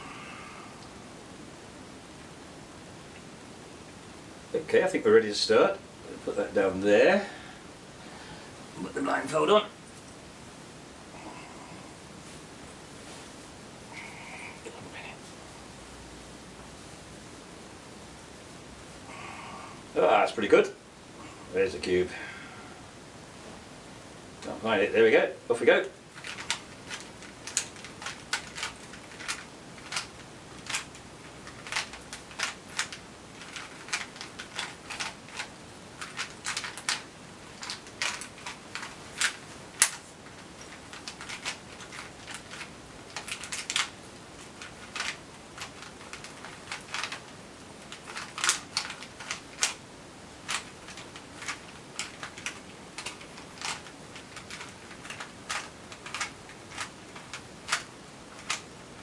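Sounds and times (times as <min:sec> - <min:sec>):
puzzle cube plastic clicks: 0:26.1 - 0:49.8, 0:50.4 - 0:59.0.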